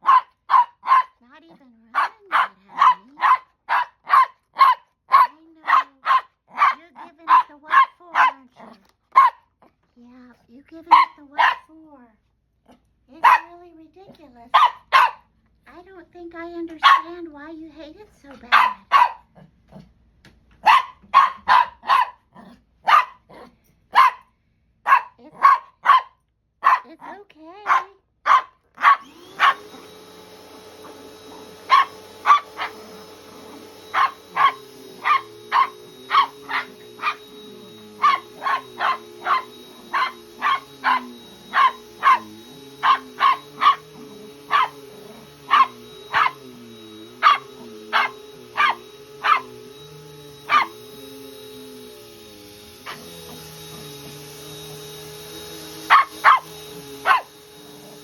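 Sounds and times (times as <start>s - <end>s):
dog barking: 0.0s - 1.2s, 1.9s - 9.5s, 10.9s - 11.7s, 13.2s - 13.6s, 14.5s - 15.3s, 16.8s - 17.2s, 18.4s - 19.5s, 20.6s - 29.9s, 30.8s - 46.4s, 47.1s - 49.6s, 50.4s - 50.8s, 52.8s - 53.4s, 55.8s - 57.4s
vacuum cleaner humming: 2.0s - 3.4s, 16.4s - 19.2s, 20.3s - 22.1s, 27.6s - 58.0s.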